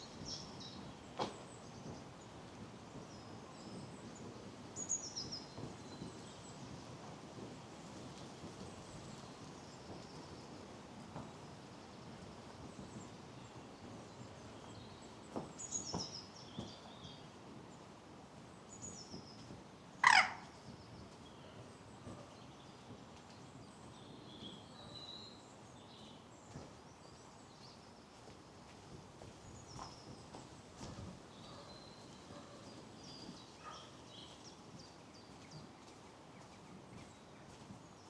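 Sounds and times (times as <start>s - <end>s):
outdoor background hiss: 0.0s - 38.0s
birds chirping: 20.0s - 20.5s.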